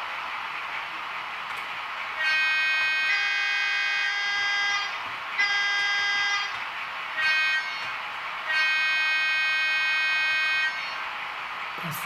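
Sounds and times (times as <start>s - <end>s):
steady running noise hiss: 0.0s - 12.0s
model locomotive horn blasts: 2.2s - 6.6s, 7.2s - 11.0s.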